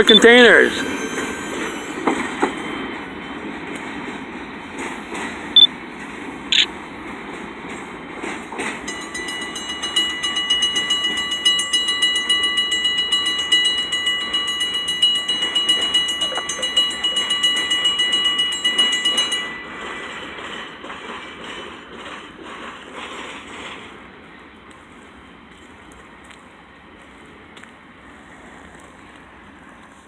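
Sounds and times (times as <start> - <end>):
high metallic ringing squeal: 0.0 - 3.5, 8.9 - 20.8
freight train cars rolling: 0.0 - 30.0.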